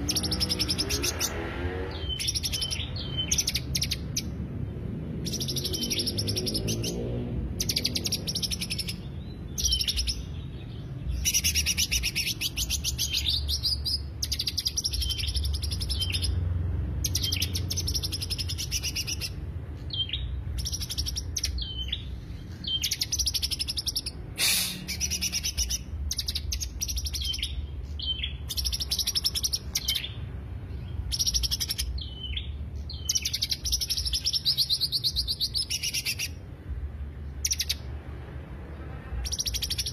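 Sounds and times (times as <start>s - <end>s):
bird chattering trills: 0.0s - 4.4s, 11.1s - 16.4s, 17.1s - 30.2s, 31.0s - 36.4s.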